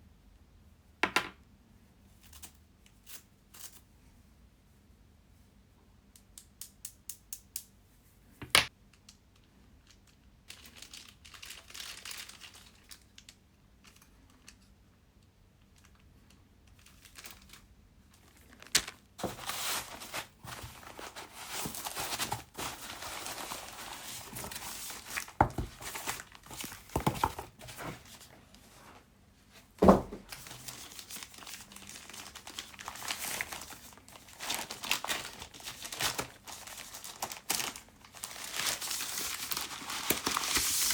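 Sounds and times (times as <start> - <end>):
wrapping crinkling and tearing: 9.8 - 14.6, 16.7 - 28.4, 30.2 - 40.9
knocks and thump: 29.8 - 30.2.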